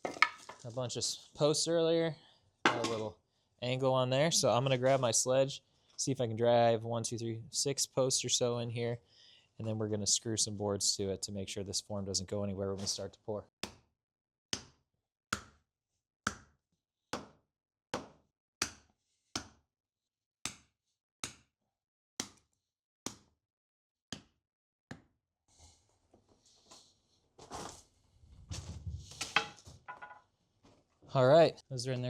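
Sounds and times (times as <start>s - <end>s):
rustling and handling noise: 0.0s - 1.4s, 26.0s - 31.1s.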